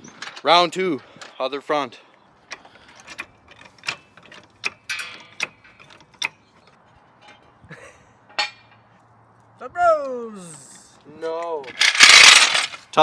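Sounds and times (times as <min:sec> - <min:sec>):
metallic clicks of hand tools: 0:02.5 - 0:06.6
ringing metal clink: 0:03.0 - 0:06.4.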